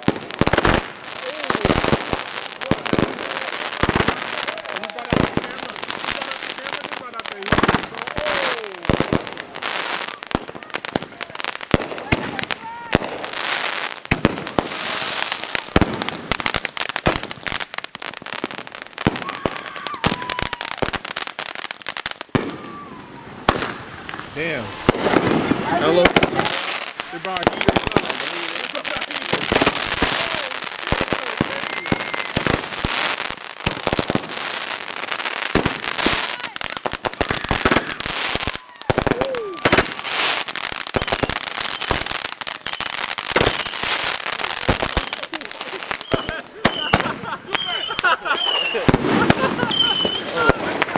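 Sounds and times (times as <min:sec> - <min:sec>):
fireworks bangs and crackles: 0:00.0 - 0:50.9
thin whistling tone: 0:31.6 - 0:32.4.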